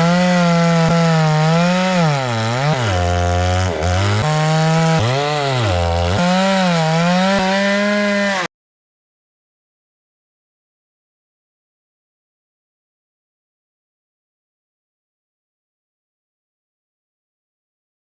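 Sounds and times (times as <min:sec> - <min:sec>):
chainsaw cutting wood: 0:00.0 - 0:08.5.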